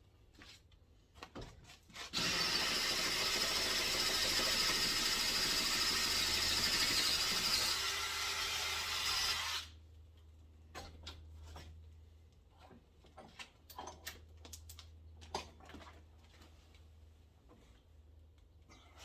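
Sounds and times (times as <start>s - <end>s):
tools clicking and knocking: 13.2s - 15.5s.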